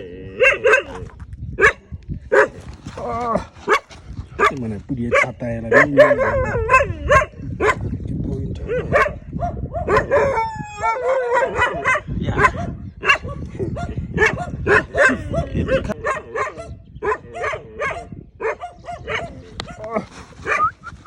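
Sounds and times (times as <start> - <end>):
dog barking: 0.4 - 1.0, 1.6 - 2.6, 3.7 - 7.9, 8.7 - 20.7
dog howling: 5.8 - 7.3, 9.8 - 12.6.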